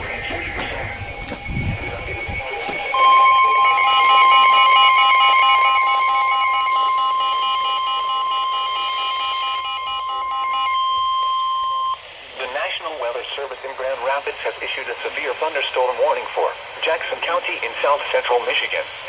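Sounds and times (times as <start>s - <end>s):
pulsing alarm beeps: 0.0s - 12.0s
faint tones: 0.0s - 12.1s
steady warning alarm tone: 0.0s - 12.1s.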